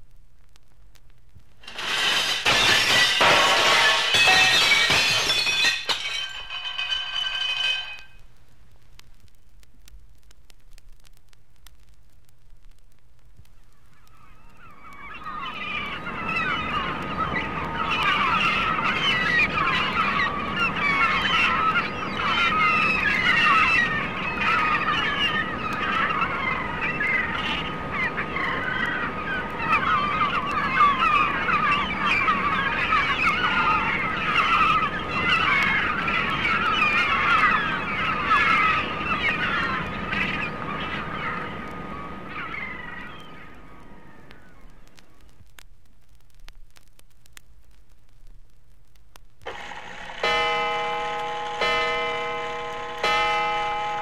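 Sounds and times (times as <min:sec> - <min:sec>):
seagulls calling: 0:01.8 - 0:07.9, 0:13.7 - 0:45.3, 0:50.2 - 0:54.0.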